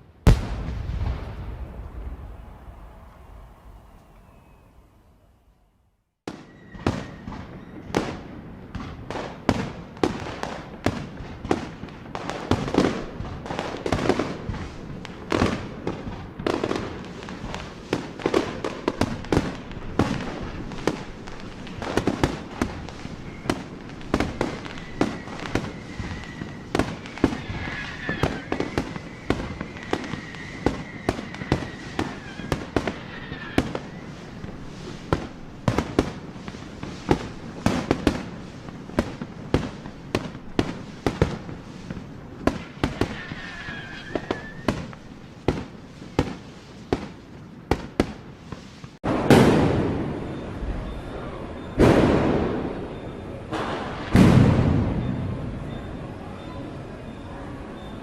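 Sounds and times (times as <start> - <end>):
firecrackers banging: 0.2 - 4.7, 6.3 - 57.8
faint thin whistle: 2.4 - 7.9, 23.1 - 34.5, 43.1 - 44.8, 50.2 - 51.8, 52.8 - 53.4, 54.9 - 58.0
crackling hiss: 6.3 - 58.0.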